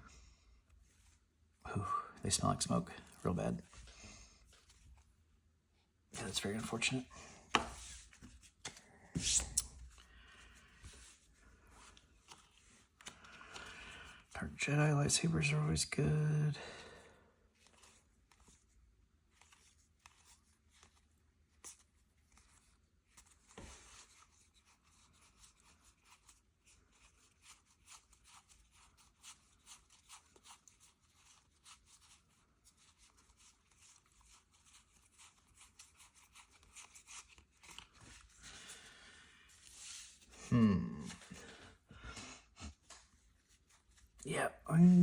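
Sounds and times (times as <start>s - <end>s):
trading cards rustling and clicking: 11.8s - 14.2s, 33.0s - 38.8s.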